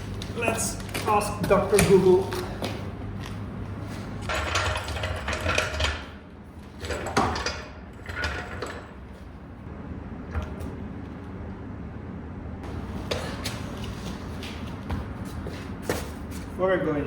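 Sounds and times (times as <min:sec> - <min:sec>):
steady low hum: 0:00.0 - 0:17.0
objects clattering and clinking: 0:04.3 - 0:06.2.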